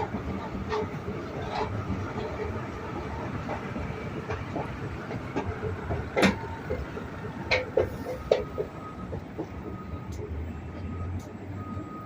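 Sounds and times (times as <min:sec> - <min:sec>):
street traffic rumble: 0:00.0 - 0:12.0
sharp knocks or clanks: 0:05.4 - 0:09.5.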